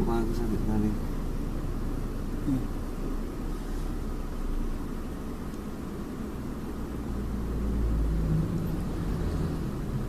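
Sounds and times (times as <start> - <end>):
engine and road rumble: 0.0 - 10.0.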